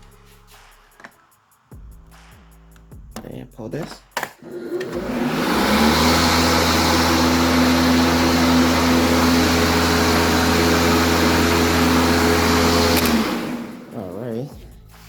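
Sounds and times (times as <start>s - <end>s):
electric lawn mower running: 4.4s - 14.0s.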